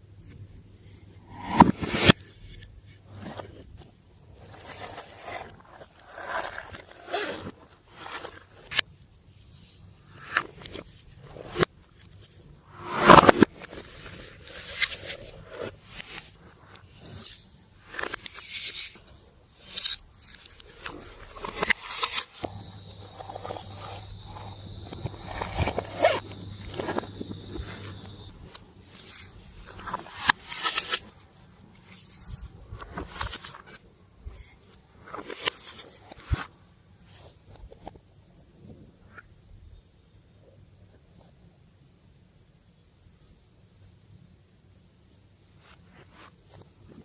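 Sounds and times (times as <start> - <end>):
low hum with high whine: 19.0 - 33.6.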